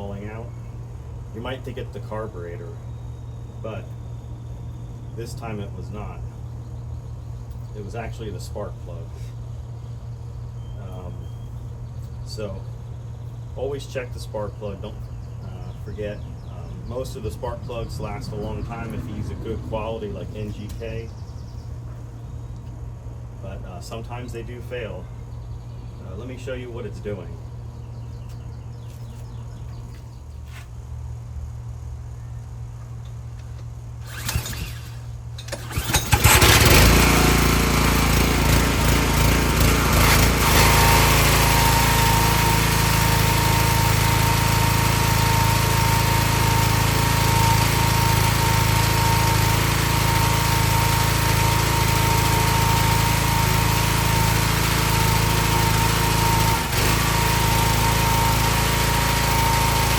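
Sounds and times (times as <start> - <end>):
small engine running rough: 8.8 - 23.4, 33.1 - 59.9
engine pull-start: 34.0 - 59.9.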